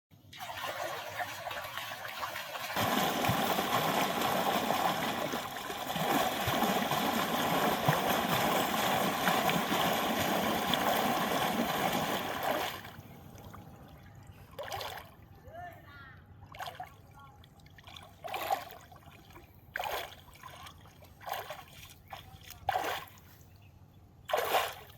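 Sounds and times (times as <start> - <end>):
running splashing water: 0.4 - 13.0.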